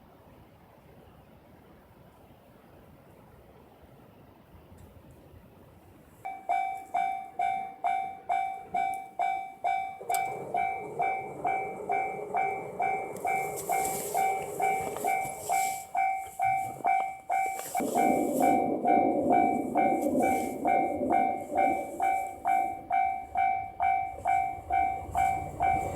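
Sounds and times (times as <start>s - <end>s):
train rumbling: 1.6s - 25.9s
level crossing warning bell: 6.2s - 25.9s.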